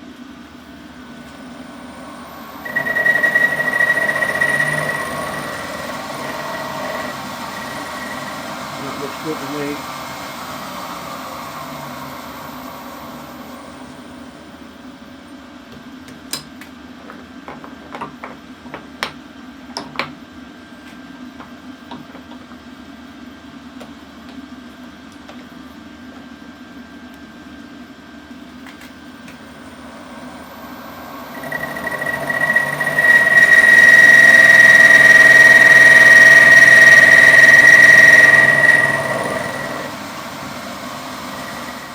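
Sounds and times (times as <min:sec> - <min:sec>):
low machine hum: 0:00.0 - 0:15.1, 0:29.0 - 0:41.9
machine tool motor whine: 0:01.0 - 0:14.7, 0:29.4 - 0:41.9.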